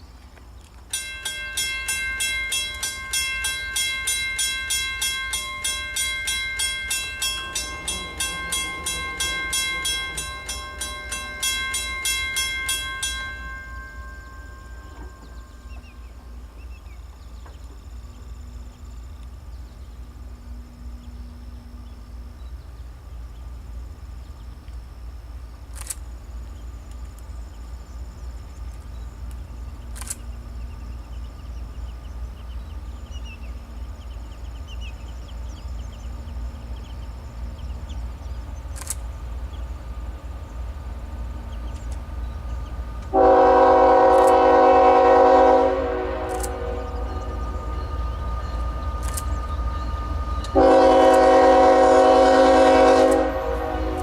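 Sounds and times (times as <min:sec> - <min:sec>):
train rumble: 0:00.0 - 0:54.0
train horn: 0:07.2 - 0:11.5, 0:43.0 - 0:54.0.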